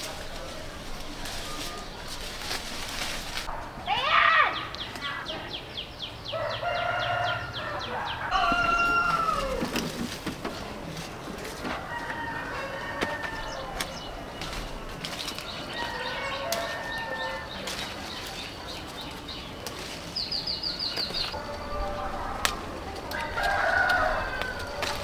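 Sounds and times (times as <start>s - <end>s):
chicken calls: 6.2s - 25.0s
wings flapping: 8.4s - 11.6s.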